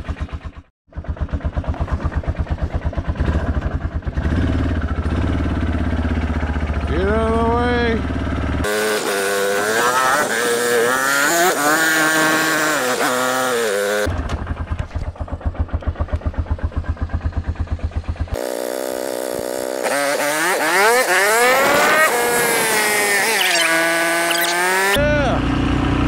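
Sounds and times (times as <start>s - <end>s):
quadcopter motors whining: 8.7s - 14.1s, 18.4s - 25.0s.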